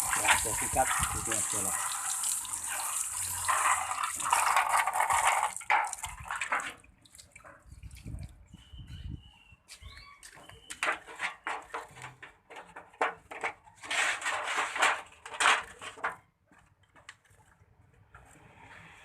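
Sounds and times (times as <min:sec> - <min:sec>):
stiff brush scrubbing: 0:00.0 - 0:05.2
faint bird chirps: 0:07.6 - 0:10.8.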